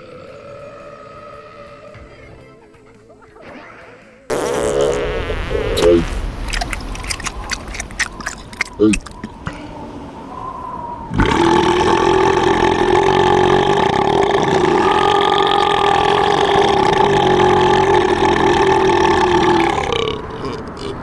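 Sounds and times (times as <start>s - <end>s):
long loud cartoon belch: 11.1s - 21.0s.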